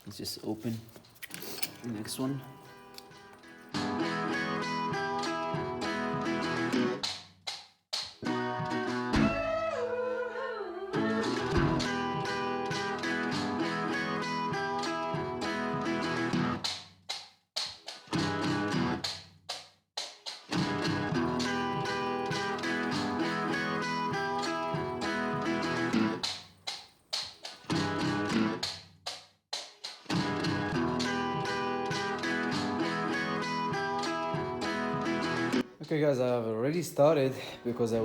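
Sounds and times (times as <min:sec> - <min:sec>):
guitar background music: 0:01.9 - 0:07.1, 0:08.2 - 0:10.1, 0:11.0 - 0:16.7, 0:18.1 - 0:19.1, 0:20.5 - 0:26.3, 0:27.7 - 0:28.7, 0:30.1 - 0:35.7.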